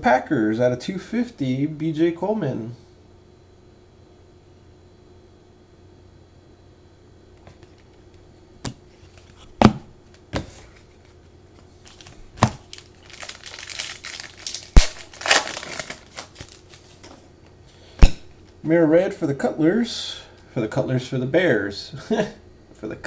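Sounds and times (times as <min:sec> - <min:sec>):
wrapper crinkling and tearing: 0:11.8 - 0:17.2.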